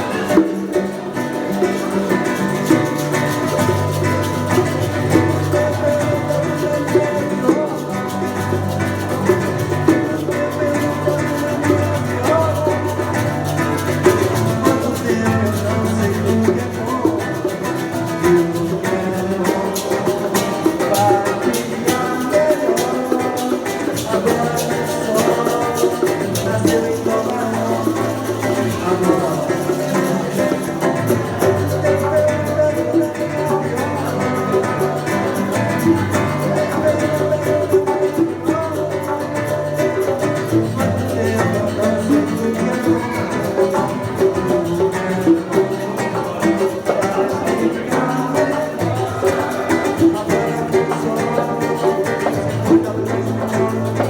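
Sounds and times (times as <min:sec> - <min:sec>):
acoustic guitar strumming: 0:00.0 - 0:54.0
hand percussion clicking: 0:00.0 - 0:54.0.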